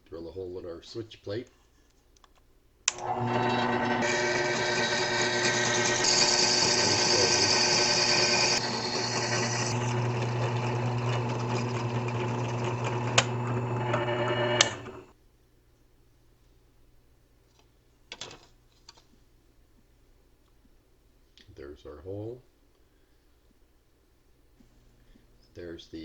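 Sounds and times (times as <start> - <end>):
electric drill motor whine: 2.9 - 15.1
hissing drill cutting plastic: 2.9 - 15.1.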